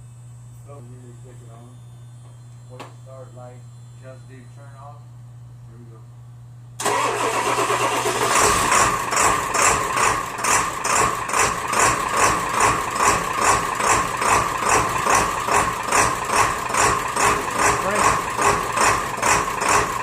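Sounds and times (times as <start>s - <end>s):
diesel engine idling: 6.8s - 20.0s
starter motor cranking: 6.8s - 20.0s.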